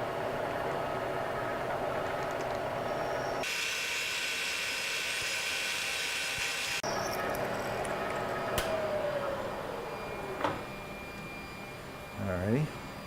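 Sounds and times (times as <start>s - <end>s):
milling machine running hum: 0.0s - 13.0s
high-pitched drill cutting: 3.3s - 7.4s
sharp click: 8.6s - 8.8s.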